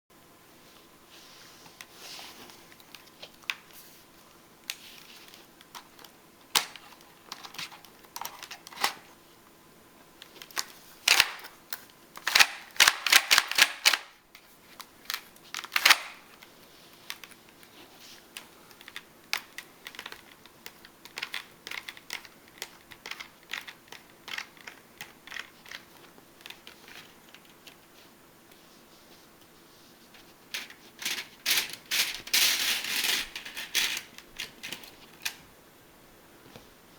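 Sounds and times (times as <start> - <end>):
paper parts clicking and tapping: 4.6 - 9.0, 10.2 - 27.9.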